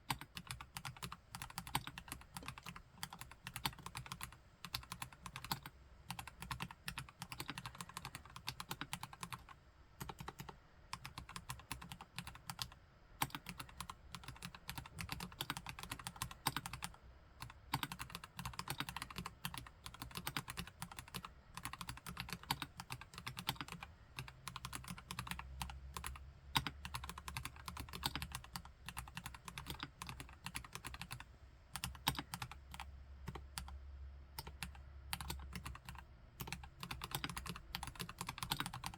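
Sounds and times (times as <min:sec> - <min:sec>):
mechanical keyboard typing: 0:00.0 - 0:33.8, 0:34.4 - 0:38.9.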